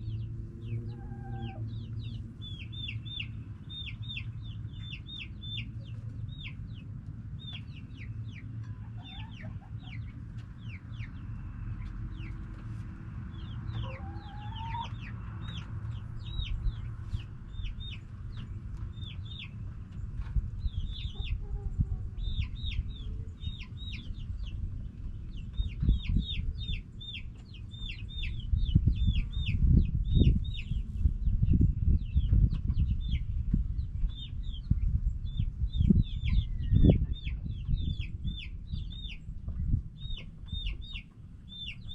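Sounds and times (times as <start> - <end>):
chickens calling: 0.0 - 41.9
chickens clucking: 0.1 - 30.9, 32.2 - 41.9
loud low thumps and rumble: 15.4 - 27.2, 27.8 - 41.0.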